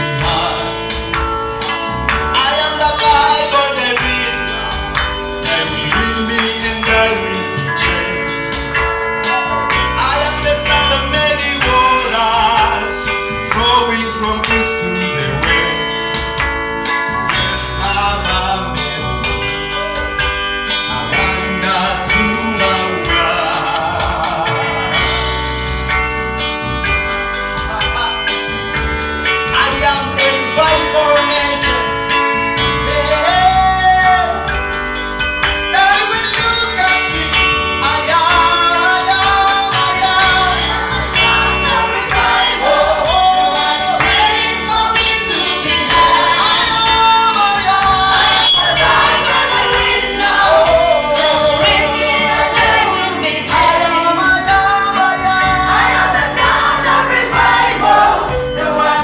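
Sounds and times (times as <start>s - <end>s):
group of voices singing: 0.0s - 25.8s, 35.7s - 59.0s
keyboard: 0.0s - 59.0s
steady bass beat: 0.0s - 59.0s.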